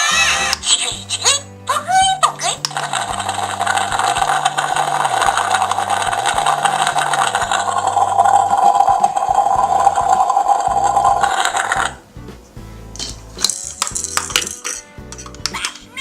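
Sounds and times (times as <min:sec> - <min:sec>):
electronic sizzling hiss: 0:03.1 - 0:14.2.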